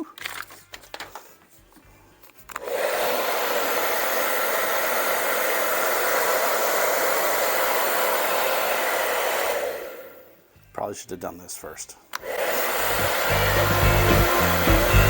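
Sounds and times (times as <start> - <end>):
hair dryer blowing: 2.6 - 10.2, 12.2 - 15.0.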